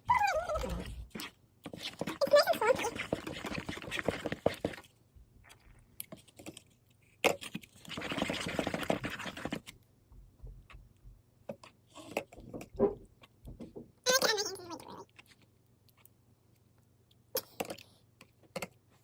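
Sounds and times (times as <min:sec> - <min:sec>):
utensil scraping and clicking in bowl: 0:01.1 - 0:04.9.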